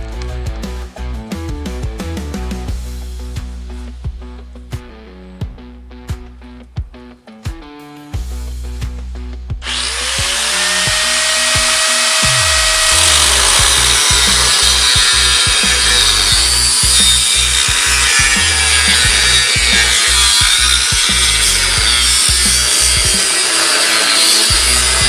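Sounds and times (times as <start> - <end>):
background music with beat: 0.0 - 25.0
power tool cutting sheet metal: 9.6 - 25.0.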